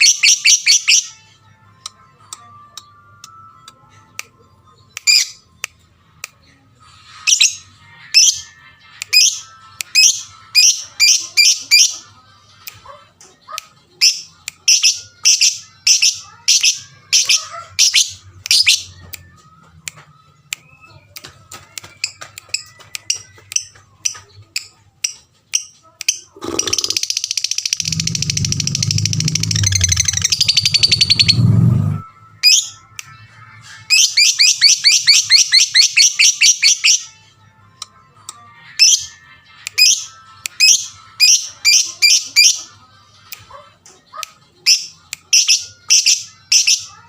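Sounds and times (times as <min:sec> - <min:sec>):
lovebird chirping: 0:26.4 - 0:31.6.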